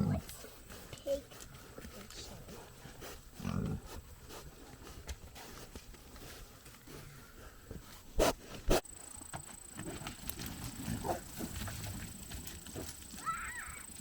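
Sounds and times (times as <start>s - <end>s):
pigs grunting: 0.0s - 0.5s, 3.4s - 4.0s, 9.8s - 14.0s.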